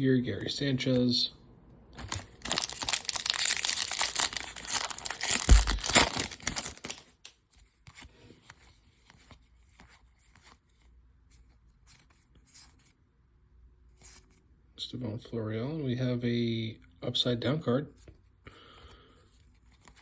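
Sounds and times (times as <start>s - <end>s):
cards clicking and rustling: 2.0s - 7.3s
foil wrapper tearing and crinkling: 2.0s - 7.3s.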